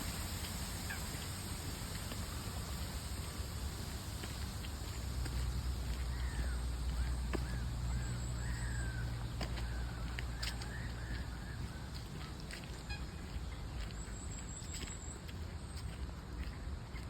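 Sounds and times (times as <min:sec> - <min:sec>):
steady low rumble: 0:00.0 - 0:17.0
bird calling: 0:04.2 - 0:14.9.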